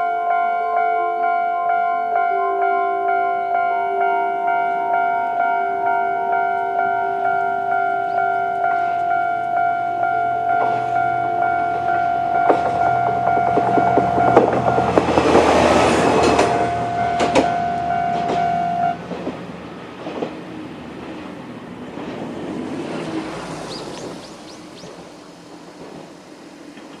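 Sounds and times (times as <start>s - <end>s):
electronic crossing warning bell: 0.0s - 19.0s
diesel railcar engine humming: 0.0s - 27.0s
train wheels clicking over rail joints: 10.5s - 27.0s.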